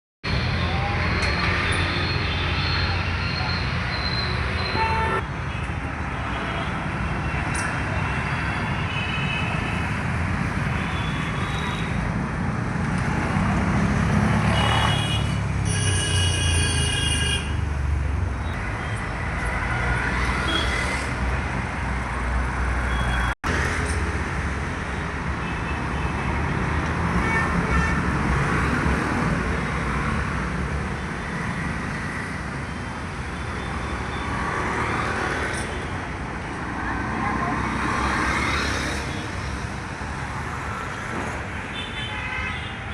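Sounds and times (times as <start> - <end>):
car horn: 4.6 - 5.2, 14.6 - 17.6.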